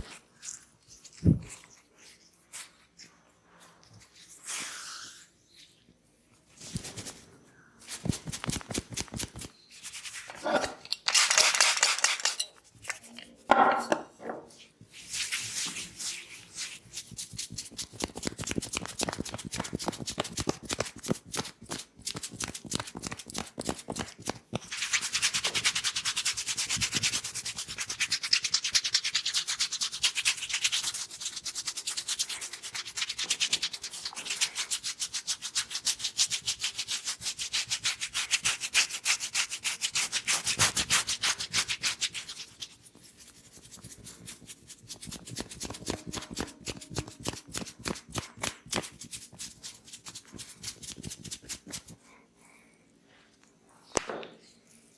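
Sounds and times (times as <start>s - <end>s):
hands rubbing through hair: 6.5s - 10.4s, 11.1s - 13.1s, 14.9s - 52.0s.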